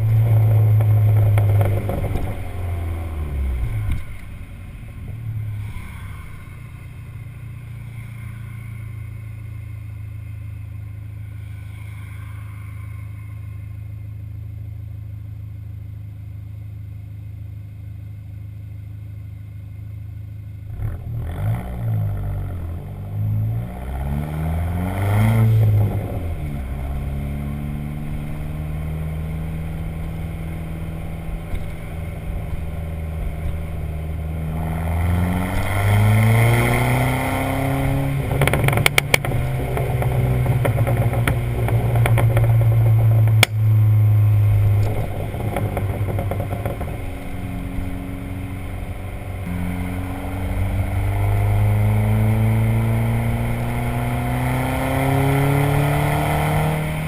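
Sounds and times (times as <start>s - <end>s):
exhaust crackles and pops: 0.0s - 5.9s, 20.7s - 57.0s
car engine revving: 0.0s - 14.8s, 20.4s - 57.0s.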